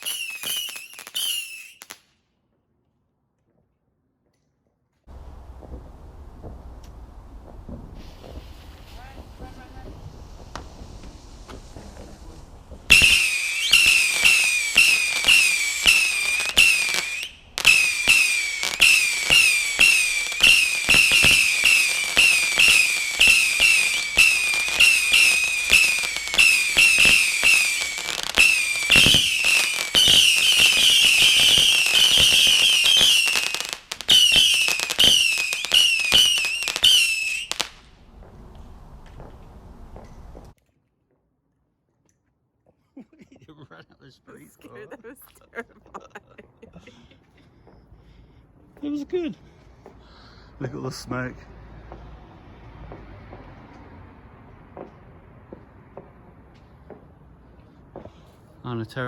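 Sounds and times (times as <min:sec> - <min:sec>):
whistling firework shots: 0:00.0 - 0:02.2, 0:05.1 - 0:38.4.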